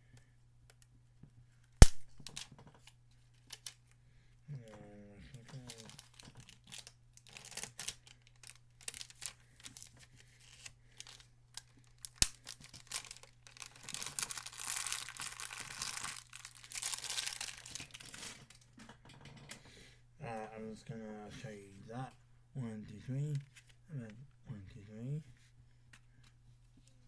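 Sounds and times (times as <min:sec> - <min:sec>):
plastic shrink-wrap crinkling: 0:05.5 - 0:18.7.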